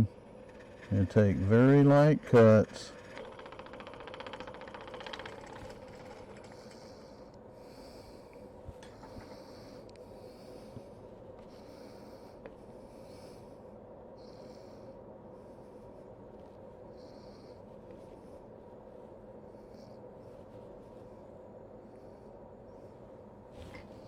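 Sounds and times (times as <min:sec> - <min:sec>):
turning tool scraping wood: 0:00.0 - 0:07.0
wood lathe humming: 0:00.0 - 0:07.1.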